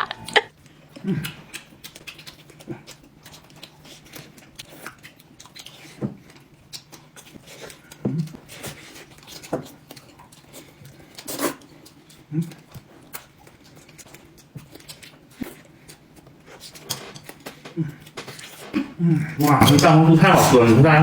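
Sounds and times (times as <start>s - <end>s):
person chewing food: 0.9s - 17.7s.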